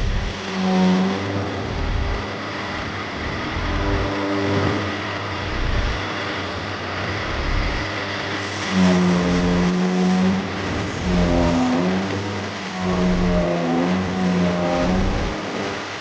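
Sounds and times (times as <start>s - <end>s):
low rumble: 0.0s - 0.6s, 1.3s - 6.3s, 7.0s - 8.0s, 10.8s - 11.7s, 14.8s - 15.4s
power tool motor whining: 0.0s - 6.3s.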